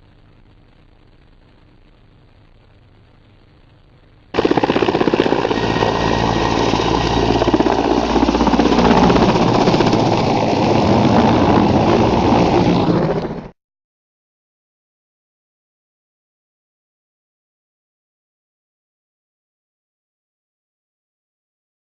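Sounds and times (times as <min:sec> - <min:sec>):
helicopter rotor chopping: 0:04.4 - 0:13.6.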